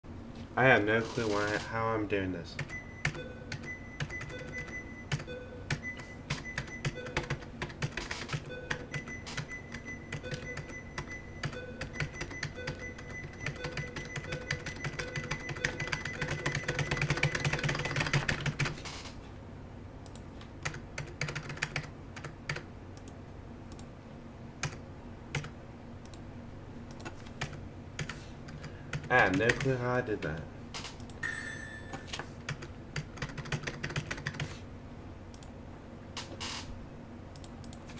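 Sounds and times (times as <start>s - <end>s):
keyboard keys clicking: 2.6s - 18.8s, 20.1s - 23.9s, 32.5s - 34.5s
steady ringing tone: 8.3s - 18.1s, 31.2s - 32.2s.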